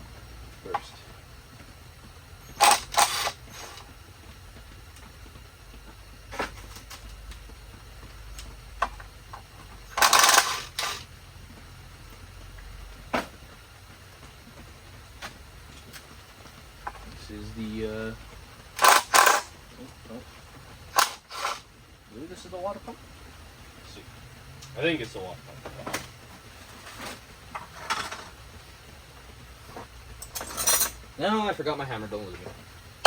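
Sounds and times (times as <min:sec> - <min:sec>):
metal tools clinking and clattering: 0:02.5 - 0:03.8, 0:09.9 - 0:11.0, 0:18.8 - 0:19.5, 0:30.2 - 0:31.1.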